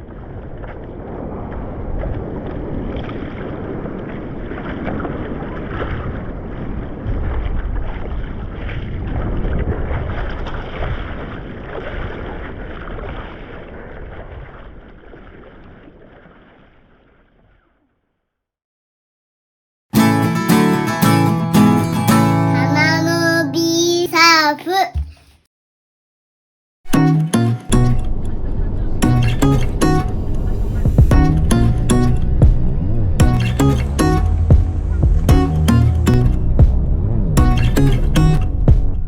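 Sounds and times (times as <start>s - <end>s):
wind buffeting microphone: 0.0s - 15.3s
steady outdoor rush: 28.1s - 37.6s.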